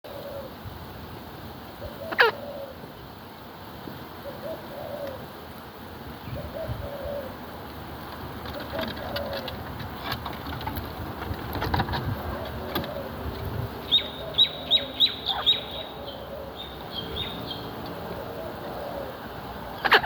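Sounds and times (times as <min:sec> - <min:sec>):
bird cooing: 0:00.1 - 0:00.6, 0:01.8 - 0:03.0, 0:04.2 - 0:05.4, 0:06.2 - 0:07.5, 0:08.4 - 0:09.8, 0:11.8 - 0:20.0.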